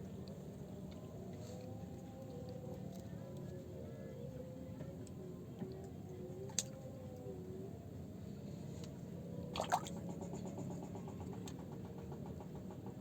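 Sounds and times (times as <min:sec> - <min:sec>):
water splash: 0:09.6 - 0:09.9.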